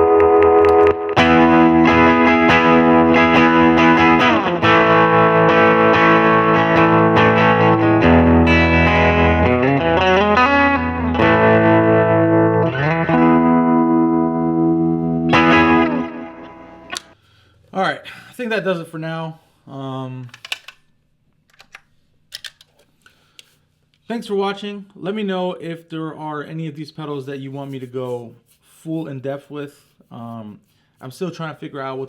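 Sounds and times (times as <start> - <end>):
delay feedback oscillation: 0.0 - 3.8
electric guitar chords with delay: 0.0 - 17.1.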